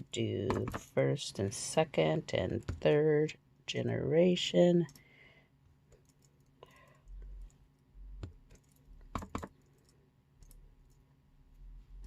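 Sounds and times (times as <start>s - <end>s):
rubber stamp tapping on ink pad: 0.4s - 0.9s.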